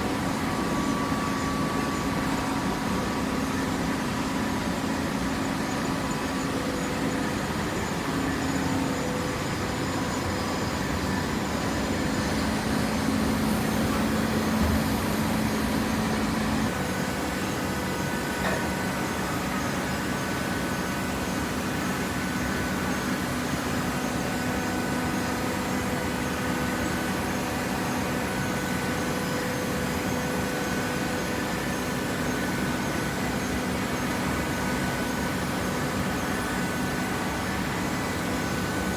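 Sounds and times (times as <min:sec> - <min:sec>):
hydraulic baler motor humming: 0:11.6 - 0:16.8.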